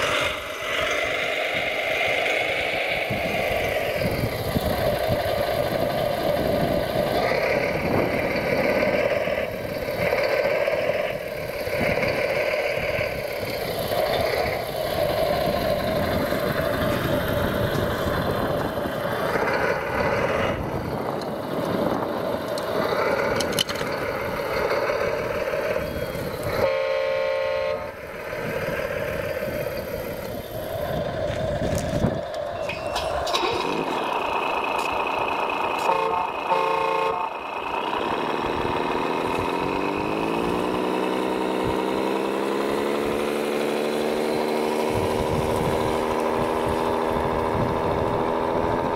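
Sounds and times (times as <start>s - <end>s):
model vehicle motors running: 0.0s - 26.7s, 27.8s - 48.9s
short horn toot: 26.6s - 28.0s, 35.8s - 37.4s.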